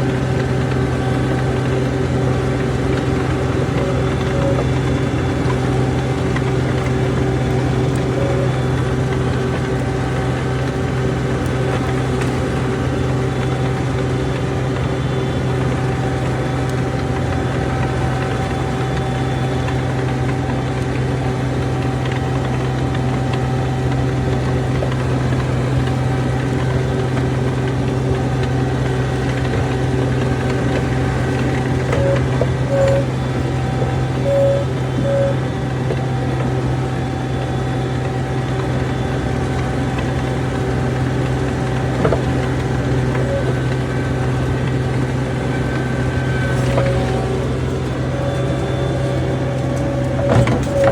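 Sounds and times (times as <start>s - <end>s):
diesel engine running: 0.0s - 50.9s
short beeps: 31.0s - 36.2s.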